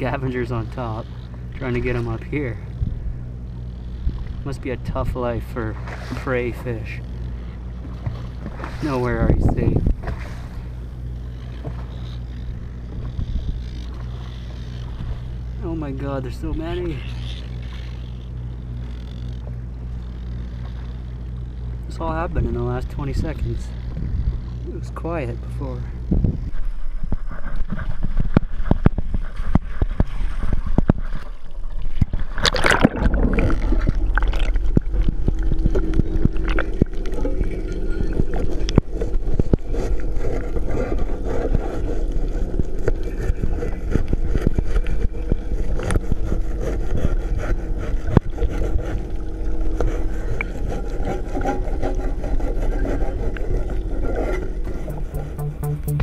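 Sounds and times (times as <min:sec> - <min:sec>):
steady low rumble: 0:00.0 - 0:56.0
sharp water splashes: 0:31.9 - 0:35.0.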